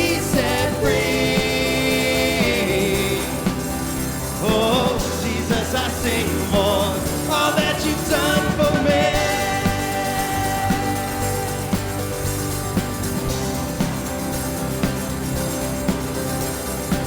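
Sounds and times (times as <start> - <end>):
worship band instrumental music: 0.0 - 17.0.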